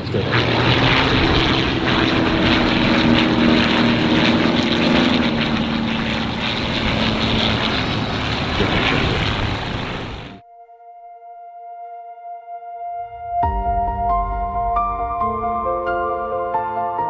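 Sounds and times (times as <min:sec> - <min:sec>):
heavy rushing noise: 0:00.0 - 0:10.4
propeller airplane engine drone: 0:00.0 - 0:10.4.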